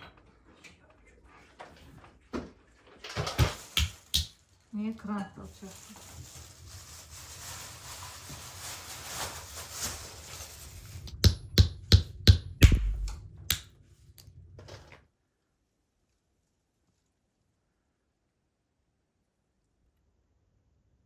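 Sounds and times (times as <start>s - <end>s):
sharp knocks: 11.1s - 13.6s.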